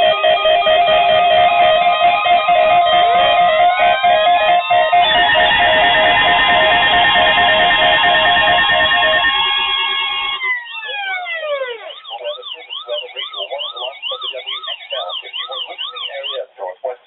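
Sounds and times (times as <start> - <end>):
siren-like warble: 0.0 - 16.4
steady electronic alarm tone: 0.0 - 16.4
pulsing low beep: 11.9 - 16.4.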